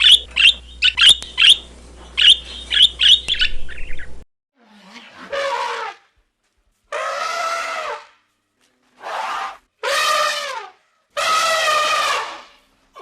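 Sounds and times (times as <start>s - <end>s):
animal high-pitched cries: 7.0s - 8.0s, 9.0s - 13.0s.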